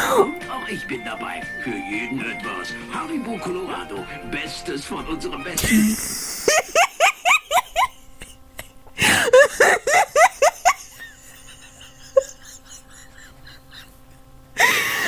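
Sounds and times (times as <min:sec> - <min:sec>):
person wheezing with laughter: 0:05.6 - 0:14.0, 0:14.6 - 0:15.0.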